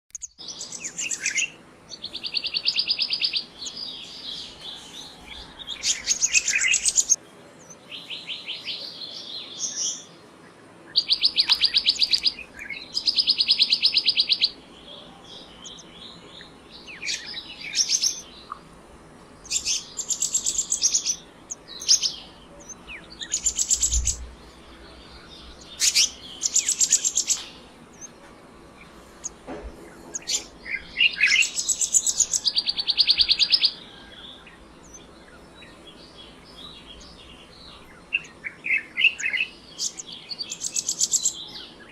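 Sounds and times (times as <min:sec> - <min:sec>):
bird calling with trilled phrases: 0:19.4 - 0:28.2, 0:29.2 - 0:41.9.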